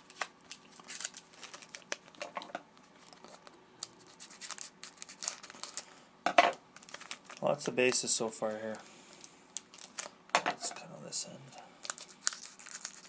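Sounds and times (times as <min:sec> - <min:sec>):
cards scraping together: 0:03.0 - 0:05.9, 0:11.9 - 0:13.0.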